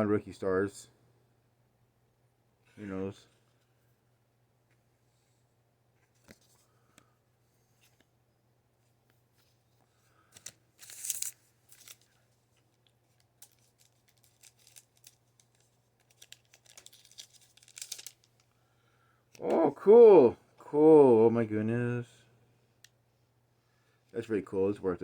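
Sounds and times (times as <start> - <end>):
cards rustling and clicking: 9.4 - 18.5
wrapper ripping: 10.4 - 12.2, 13.4 - 18.5.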